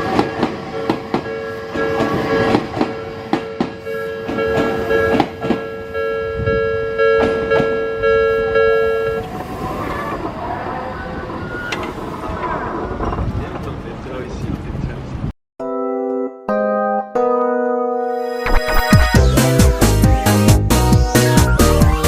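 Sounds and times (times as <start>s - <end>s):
train wheels clacking on rails: 0.0s - 5.7s
level-crossing warning bell: 0.4s - 9.4s.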